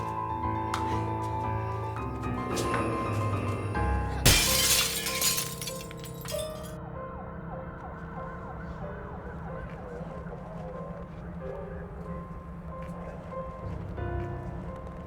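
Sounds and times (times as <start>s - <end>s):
tense film score music: 0.0s - 4.3s, 6.1s - 15.0s
glass shattering: 4.2s - 6.8s.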